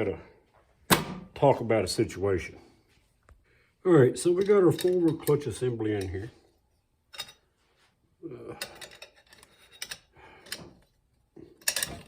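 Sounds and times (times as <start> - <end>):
metal parts clinking and clunking: 4.2 - 6.4, 7.1 - 7.5, 8.6 - 12.0.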